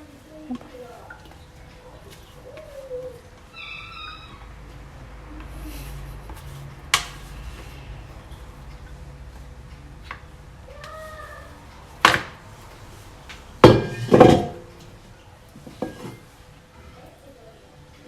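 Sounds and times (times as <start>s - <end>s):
faint short squeak: 3.5s - 4.5s
kitchenware knocking on counter: 13.6s - 14.7s, 15.6s - 16.2s.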